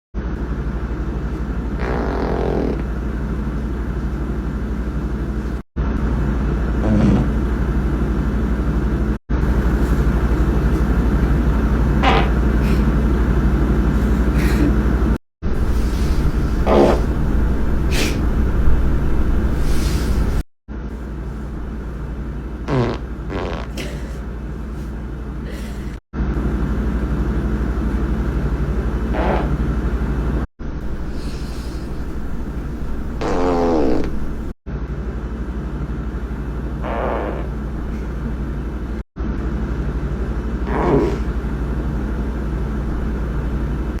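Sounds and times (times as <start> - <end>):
farts: 1.8 - 2.9, 6.8 - 7.4, 12.0 - 12.8, 16.6 - 17.2, 22.7 - 23.9, 29.1 - 29.6, 33.1 - 34.6, 36.8 - 37.6, 40.6 - 41.3
steady low rumble: 2.8 - 23.3, 24.2 - 33.3.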